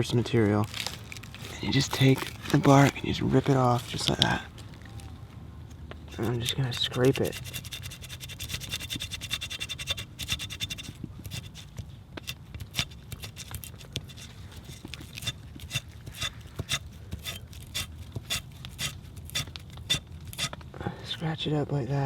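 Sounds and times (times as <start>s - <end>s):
bark being scraped: 6.1s - 20.6s.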